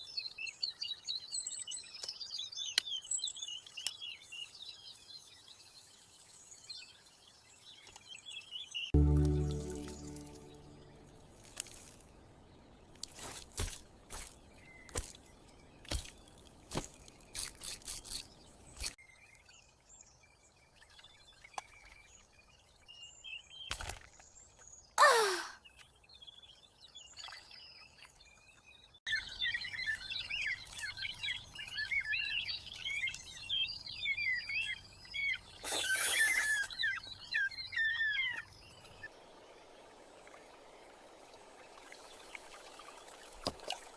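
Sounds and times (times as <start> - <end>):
birds chirping and twittering: 25.6 - 39.2.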